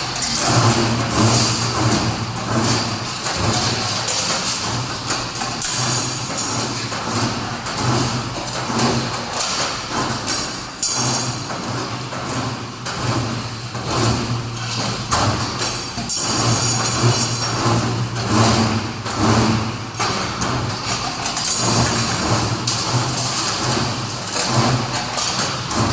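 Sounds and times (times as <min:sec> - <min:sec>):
bending machine motor hum: 0:00.0 - 0:25.9.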